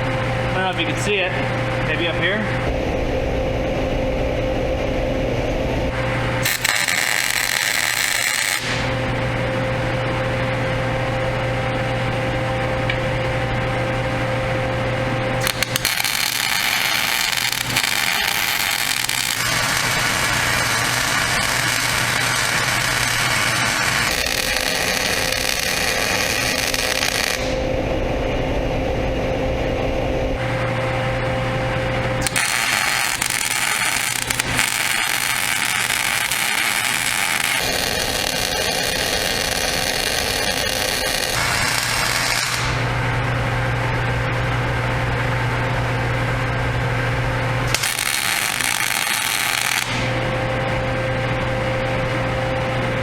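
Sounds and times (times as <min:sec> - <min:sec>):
low electrical hum: 0:00.0 - 0:53.0
arc welding crackling hiss: 0:05.9 - 0:09.4, 0:15.3 - 0:27.6, 0:30.4 - 0:43.0, 0:47.7 - 0:51.2.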